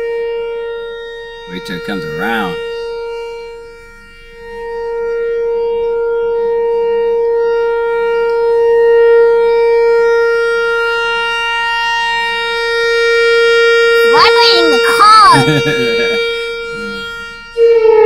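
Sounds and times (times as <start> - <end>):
rotating tornado siren: 0.0 - 18.0.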